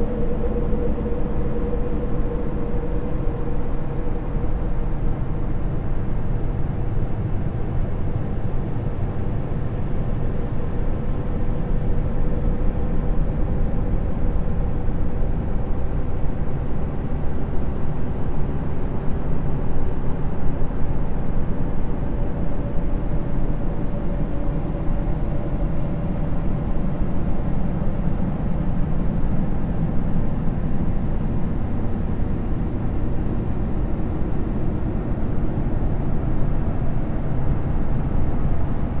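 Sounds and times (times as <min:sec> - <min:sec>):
low rumbling drone: 0:00.0 - 0:07.2
faint wavering hum: 0:00.0 - 0:39.0.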